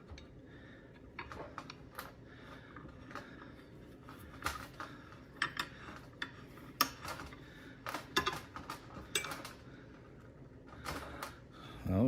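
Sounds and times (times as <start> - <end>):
metallic clinks and knocks: 4.3 - 9.6.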